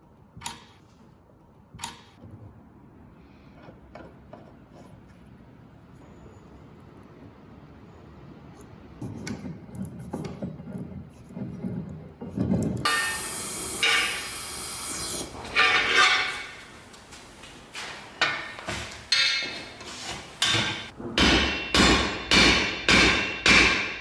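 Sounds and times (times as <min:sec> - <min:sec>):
metal and wood parts rubbing: 0:09.0 - 0:21.3.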